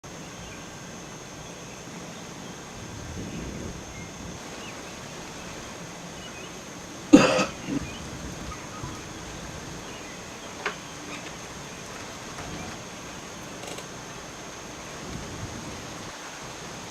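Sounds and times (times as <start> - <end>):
steady background hiss: 0.0 - 16.9
person coughing: 7.1 - 7.8.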